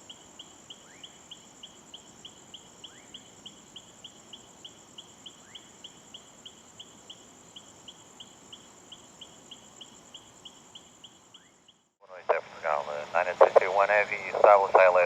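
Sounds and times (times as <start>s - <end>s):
insects chirping: 0.0s - 15.0s.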